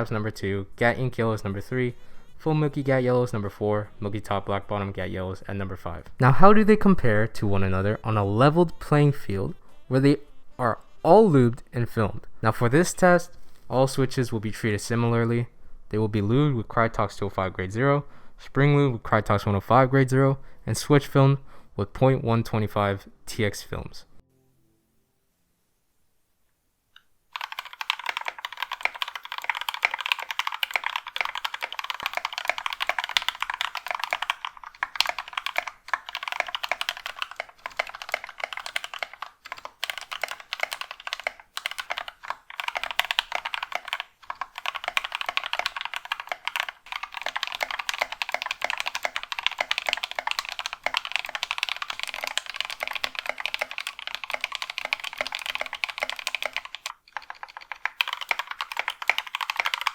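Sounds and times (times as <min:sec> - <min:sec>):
typing on mechanical keyboard: 0:27.3 - 0:59.9.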